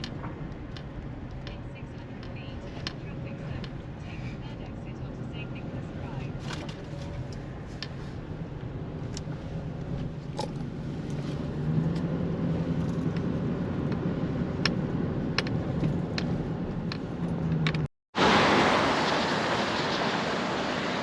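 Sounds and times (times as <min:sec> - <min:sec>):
sharp clicks and rattles: 0:00.0 - 0:03.8, 0:12.8 - 0:17.9
van engine and road hum: 0:00.0 - 0:21.0.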